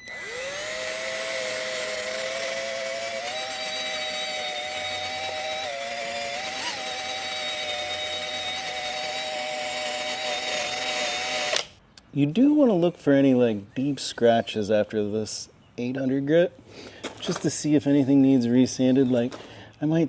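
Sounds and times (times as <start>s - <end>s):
drill motor whining: 0.0s - 11.8s.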